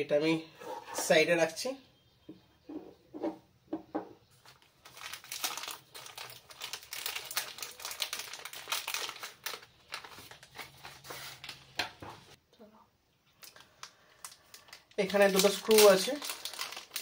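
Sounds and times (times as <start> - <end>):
packaging crinkling: 4.4 - 12.4, 13.4 - 17.0.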